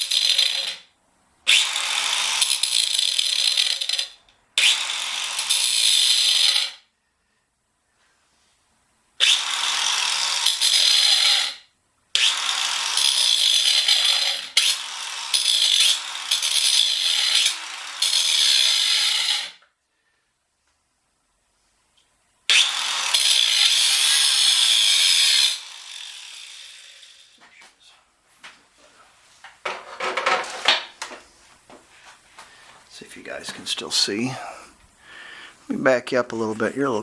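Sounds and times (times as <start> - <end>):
small handheld power tool running: 0.0 - 0.8, 1.5 - 6.8, 9.2 - 11.6, 12.2 - 19.6, 22.5 - 27.4.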